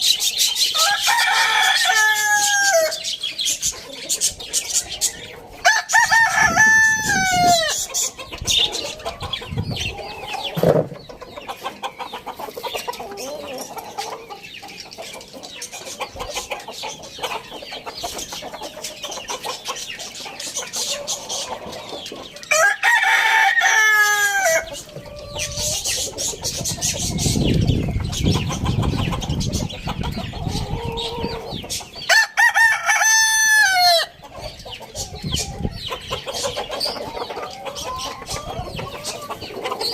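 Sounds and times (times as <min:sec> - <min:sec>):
chickens clucking: 0:00.0 - 0:39.9
rooster crowing: 0:00.8 - 0:03.0, 0:05.6 - 0:07.8, 0:22.5 - 0:24.7, 0:32.1 - 0:34.2.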